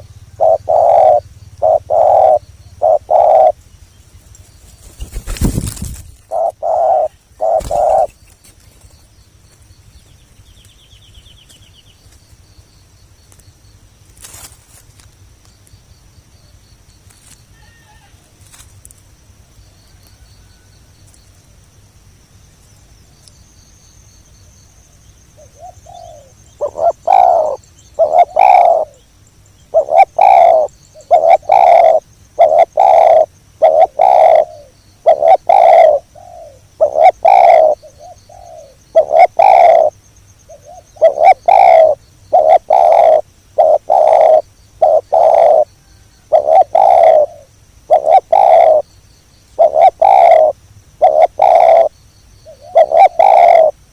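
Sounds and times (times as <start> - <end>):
doves cooing: 0.0 - 3.6, 4.8 - 8.2, 25.4 - 29.0, 29.7 - 48.9, 49.6 - 53.8
faint high steady whine: 0.0 - 53.9.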